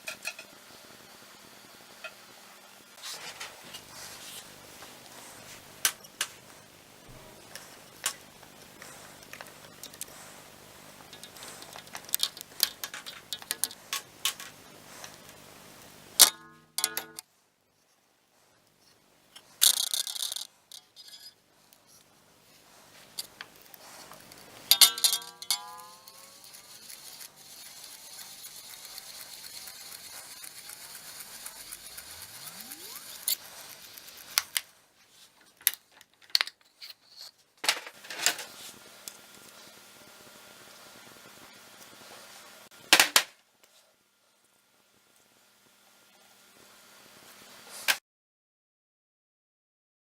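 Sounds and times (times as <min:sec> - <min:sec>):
light scraping and rustling: 0:03.0 - 0:06.5
metal rod ringing: 0:16.2 - 0:17.2, 0:24.7 - 0:26.1.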